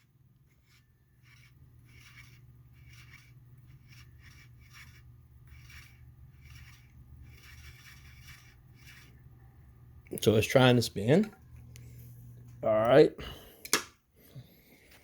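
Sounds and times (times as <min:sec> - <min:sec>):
scratchy rubbing: 0:00.0 - 0:09.3
motor humming: 0:00.0 - 0:10.2.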